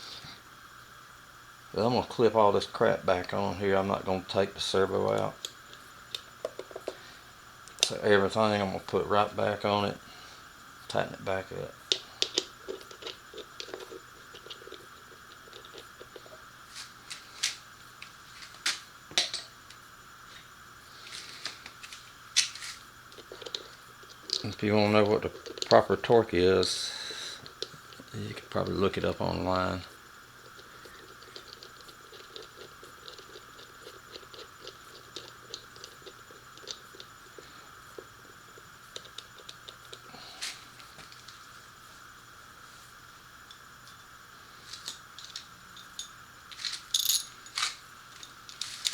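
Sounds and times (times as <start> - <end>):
faint steady hum: 0.0 - 48.9
parts clicking and knocking: 44.7 - 48.9.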